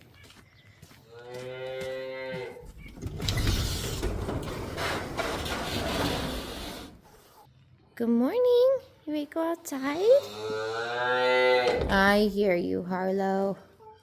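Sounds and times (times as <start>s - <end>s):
cow mooing: 10.0s - 12.0s.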